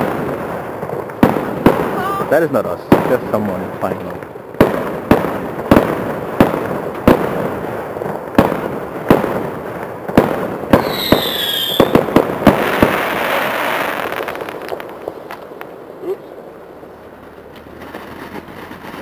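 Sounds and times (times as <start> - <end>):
firework crackling hiss: 0.0 - 19.0
fireworks bangs: 0.0 - 19.0
falling firework whistle: 10.7 - 14.4.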